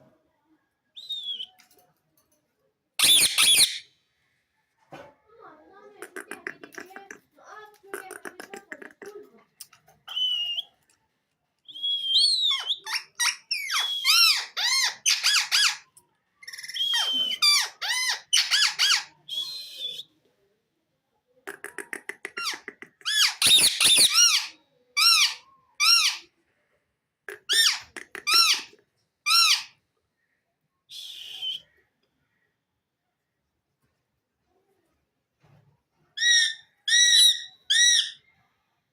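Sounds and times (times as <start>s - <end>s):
parrot squawks and chirps: 3.0s - 4.0s, 11.7s - 20.1s, 21.5s - 26.4s, 27.3s - 29.8s, 36.2s - 38.3s.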